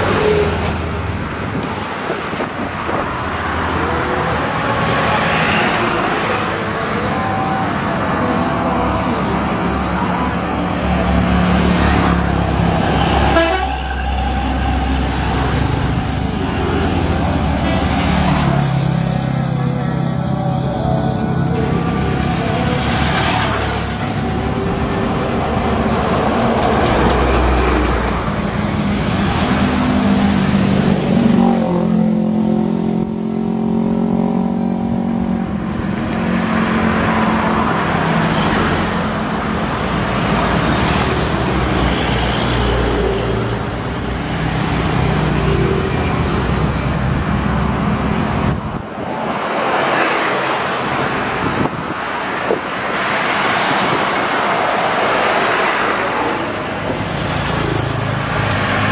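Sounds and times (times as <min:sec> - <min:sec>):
diesel engine drone: 0:00.0 - 0:58.9
road traffic passing: 0:00.0 - 0:58.9.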